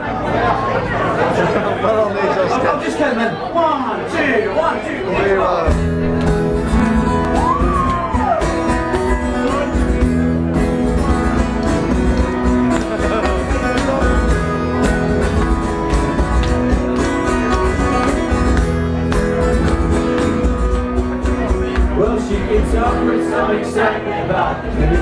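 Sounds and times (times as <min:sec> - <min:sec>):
live band playing: 0:05.0 - 0:25.0
electric guitar: 0:05.7 - 0:23.7.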